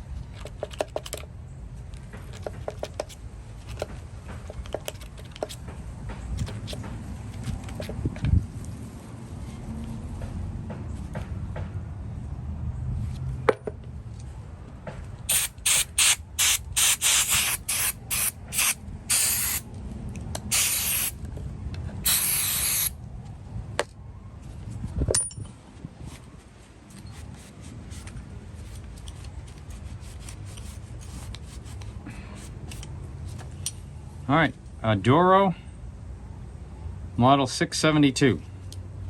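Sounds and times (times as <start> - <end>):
aerosol spray bursts: 15.3 - 19.6, 20.5 - 21.2, 22.0 - 22.9.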